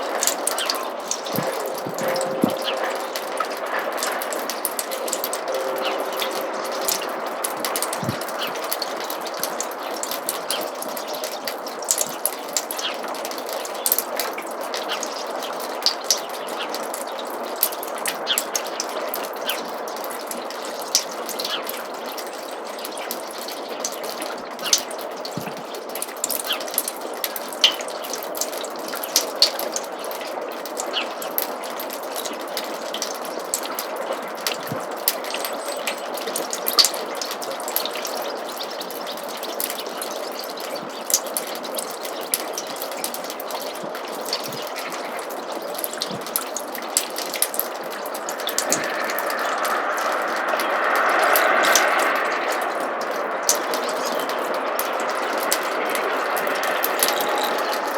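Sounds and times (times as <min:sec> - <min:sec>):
water drops ticking: 0:00.0 - 0:14.3
water trickling through gutter: 0:00.0 - 0:57.9.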